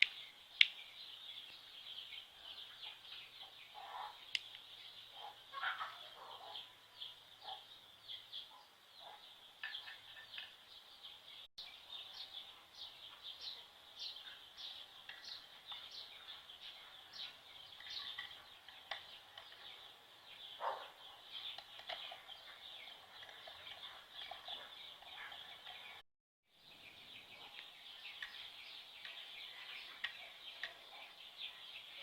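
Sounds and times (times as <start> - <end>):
faint bird chirping: 0.0 - 32.0.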